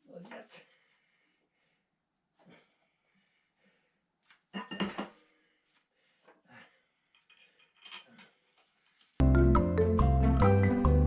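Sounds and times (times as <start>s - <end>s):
metal tools clinking: 7.2s - 8.2s.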